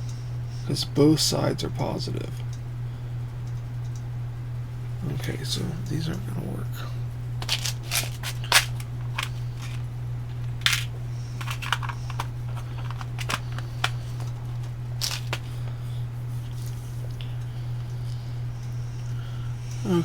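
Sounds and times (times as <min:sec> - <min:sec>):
low hum: 0:00.0 - 0:20.0
small parts clicking and rustling: 0:07.4 - 0:15.8.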